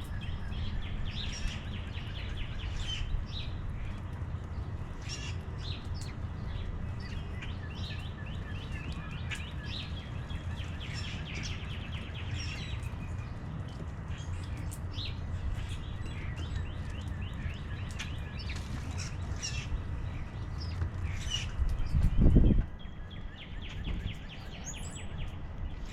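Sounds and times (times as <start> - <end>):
songbirds chirping: 0.0 - 25.9.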